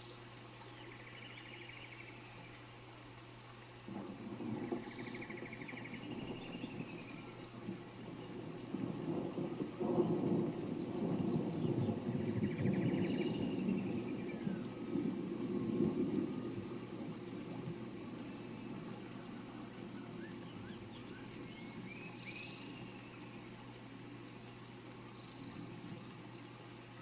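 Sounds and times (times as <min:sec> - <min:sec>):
rain hissing: 0:00.0 - 0:27.0
thunder rumbling: 0:03.9 - 0:22.8.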